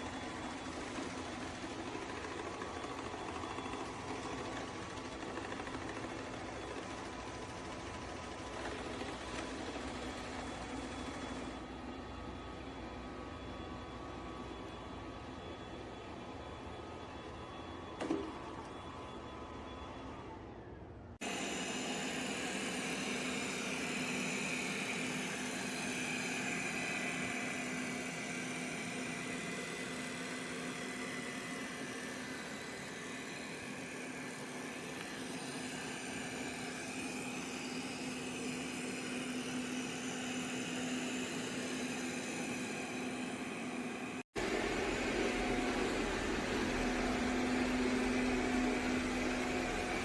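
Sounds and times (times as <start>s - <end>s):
motor humming with hiss: 21.2s - 50.0s.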